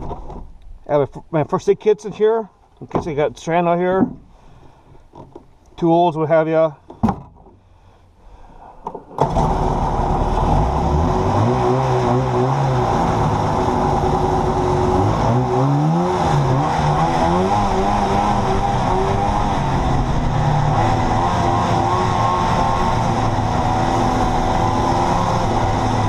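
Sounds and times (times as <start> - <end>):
snowmobile engine revving: 9.2 - 26.0.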